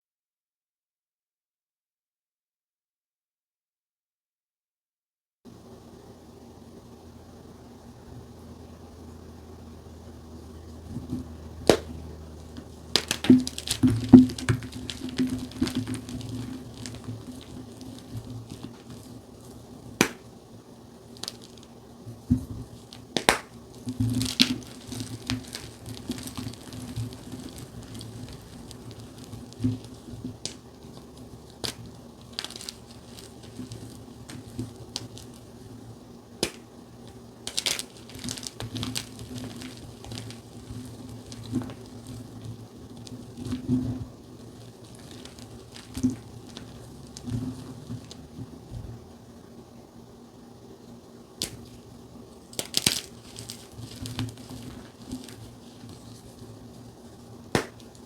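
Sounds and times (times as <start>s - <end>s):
steady low hum: 5.5s - 58.0s
chalk crunching and snapping: 11.1s - 20.3s, 21.1s - 21.7s, 22.6s - 35.5s, 36.4s - 43.8s, 44.4s - 48.3s, 52.5s - 58.0s.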